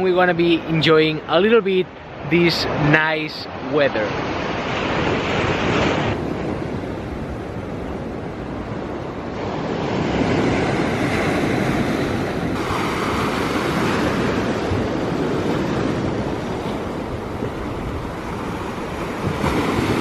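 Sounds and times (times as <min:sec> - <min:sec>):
sea waves washing onto beach: 0:00.0 - 0:20.0
wind on microphone: 0:04.2 - 0:20.0.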